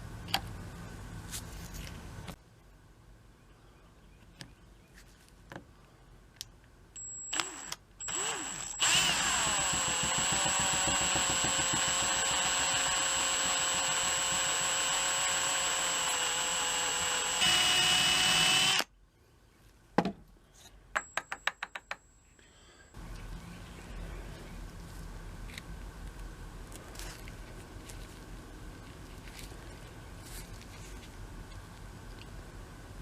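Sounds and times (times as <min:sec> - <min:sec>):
small high-speed power tool: 0:07.3 - 0:18.9.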